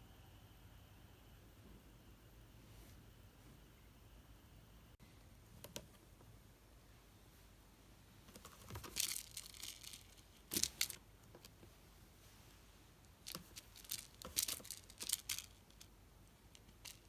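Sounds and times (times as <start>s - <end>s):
rustling crinkling noises: 8.2s - 15.9s, 16.5s - 17.0s.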